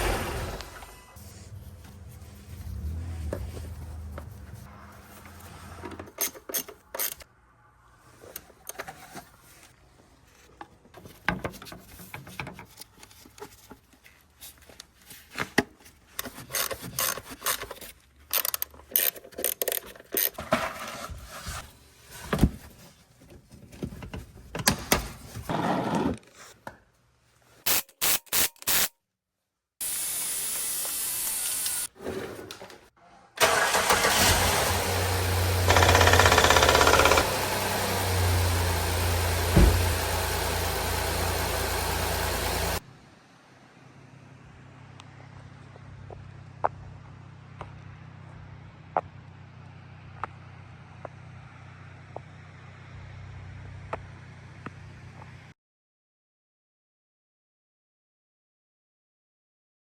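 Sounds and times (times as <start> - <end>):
tools scraping on metal parts: 5.7 - 7.3, 16.2 - 21.0.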